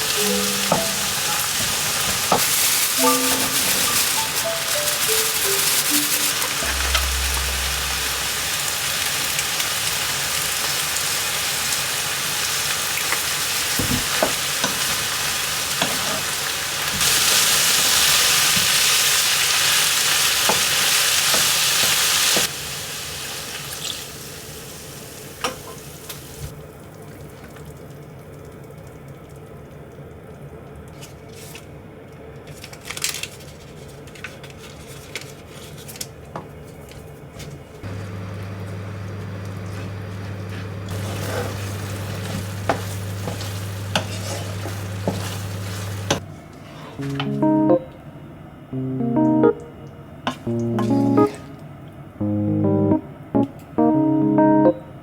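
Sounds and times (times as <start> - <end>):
food sizzling in a frying pan: 0.0 - 26.5, 37.9 - 46.2.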